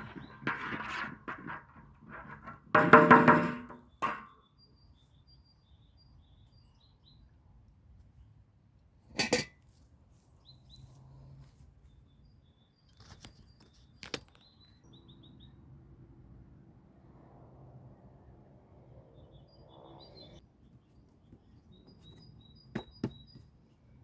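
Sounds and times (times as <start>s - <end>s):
sharp knocks: 0.0s - 4.3s
small birds chirping: 11.8s - 15.6s, 19.1s - 24.0s.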